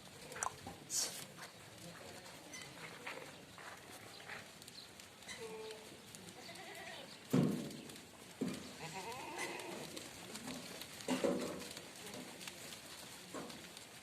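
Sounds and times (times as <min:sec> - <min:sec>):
goats bleating: 0:05.3 - 0:07.2, 0:08.7 - 0:10.1.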